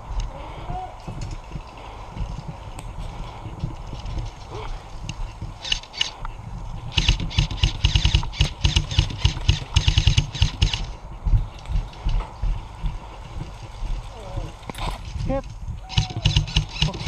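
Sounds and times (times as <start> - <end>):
airsoft rifle shots: 5.6 - 6.2, 6.9 - 11.0, 15.9 - 17.0.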